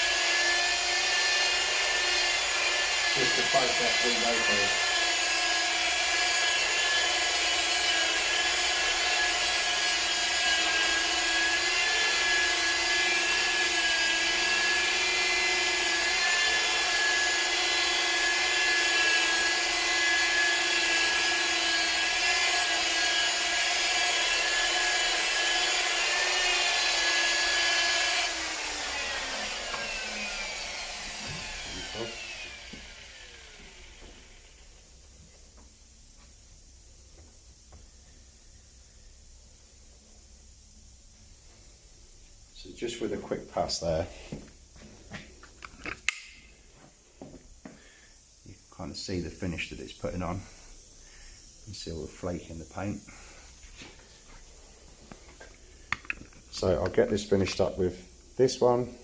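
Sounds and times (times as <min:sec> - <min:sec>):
rotary polisher whine: 0:00.0 - 0:36.3.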